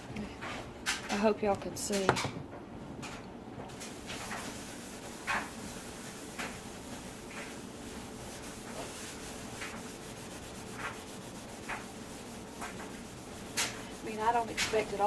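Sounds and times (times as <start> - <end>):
scouring pad scrubbing glass door: 3.7 - 15.0.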